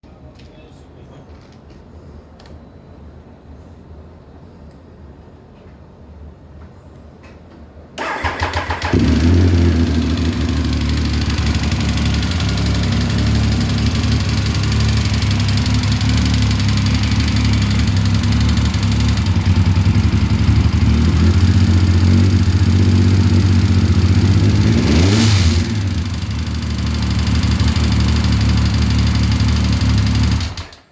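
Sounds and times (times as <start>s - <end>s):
engine revving: 8.0s - 30.6s
motorcycle engine starting and running: 8.0s - 30.9s.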